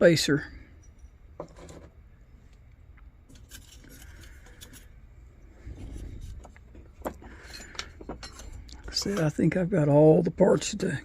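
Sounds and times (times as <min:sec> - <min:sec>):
metal parts clicking and rubbing: 0:03.3 - 0:05.0, 0:05.8 - 0:09.4.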